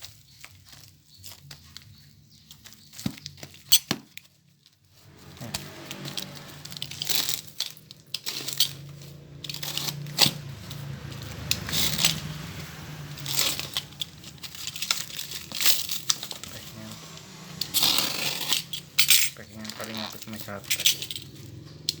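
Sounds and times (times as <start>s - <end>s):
packaging tearing and crinkling: 13.4s - 16.9s.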